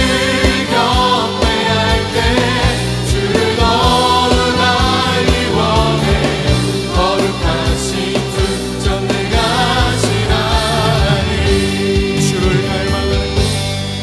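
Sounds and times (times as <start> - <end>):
voices singing: 0.0 - 13.2
worship band music: 0.0 - 14.0
drums beat: 10.1 - 13.0.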